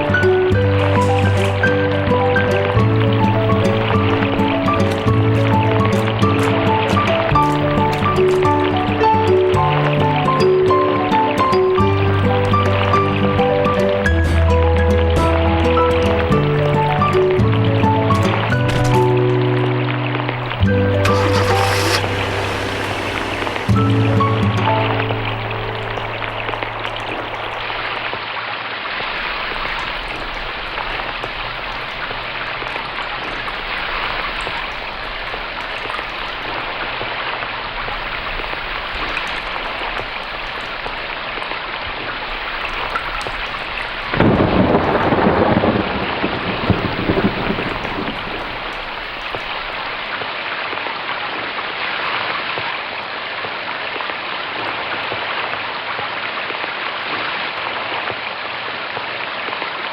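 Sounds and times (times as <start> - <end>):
heavy rain: 0.0 - 59.9
thunder rumbling: 29.0 - 50.0.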